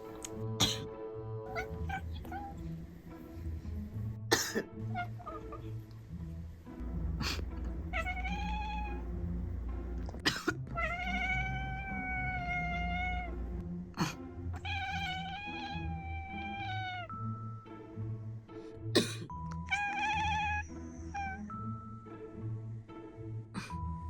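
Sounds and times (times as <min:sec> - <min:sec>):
person coughing: 0:00.6 - 0:00.9, 0:04.3 - 0:04.7, 0:10.1 - 0:10.6, 0:14.0 - 0:14.2, 0:19.0 - 0:19.3, 0:23.6 - 0:23.8
cat meowing: 0:01.5 - 0:02.7, 0:04.9 - 0:05.8, 0:07.3 - 0:09.2, 0:10.6 - 0:13.4, 0:14.6 - 0:17.3, 0:19.6 - 0:21.8.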